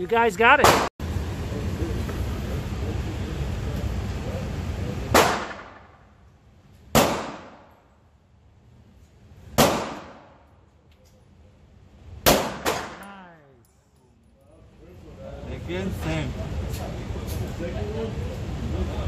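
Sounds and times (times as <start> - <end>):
pistol shots with echo: 5.1 - 6.0, 6.9 - 7.7, 9.6 - 10.4, 12.2 - 13.1.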